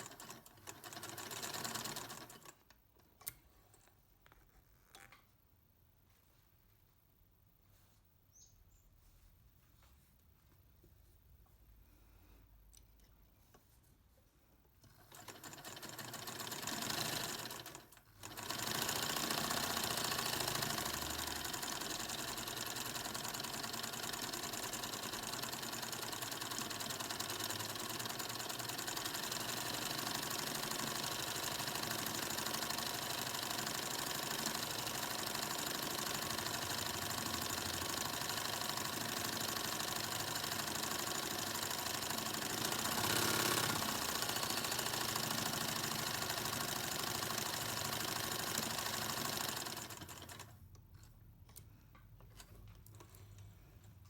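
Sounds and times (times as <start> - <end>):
sewing machine stitching: 0.0 - 2.6, 14.8 - 50.6.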